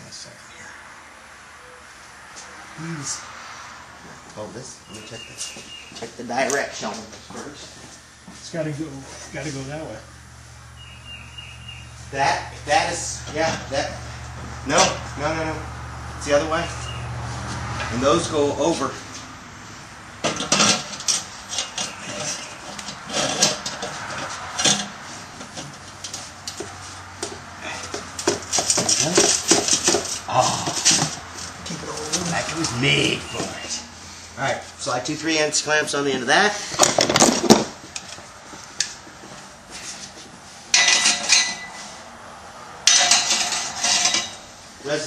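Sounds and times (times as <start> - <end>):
metal pipe parts clinking: 20.2 - 26.7, 27.9 - 31.2, 40.7 - 41.9, 42.9 - 44.5.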